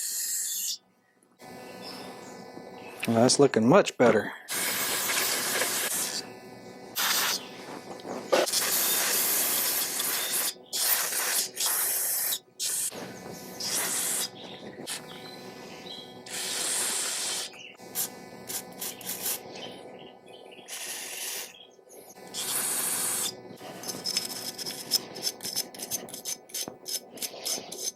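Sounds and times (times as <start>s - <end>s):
pressurised spray hissing: 4.5s - 6.2s, 7.0s - 7.6s, 8.3s - 19.7s, 20.7s - 21.5s, 22.4s - 27.9s.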